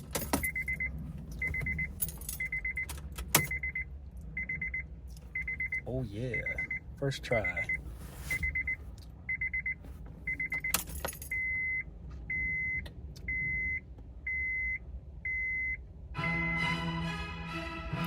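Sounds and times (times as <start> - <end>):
electronic warning chime beeping: 5.4 - 6.8, 7.4 - 10.8.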